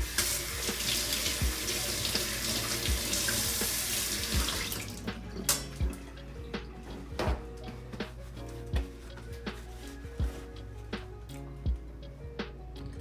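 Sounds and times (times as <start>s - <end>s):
tap water running into sink: 0.0s - 6.0s
background music with beat: 0.0s - 13.0s.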